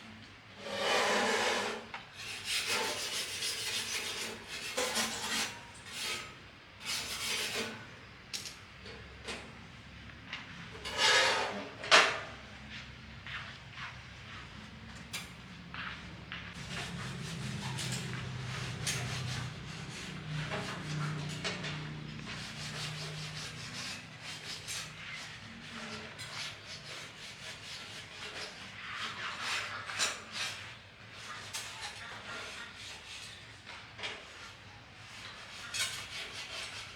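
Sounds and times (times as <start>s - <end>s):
rasping rubbing strokes: 16.6s - 30.6s.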